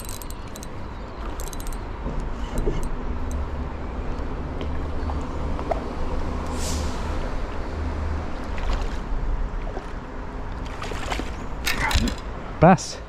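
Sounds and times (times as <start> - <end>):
fishing reel clicks: 0.0 - 0.7, 1.3 - 1.8.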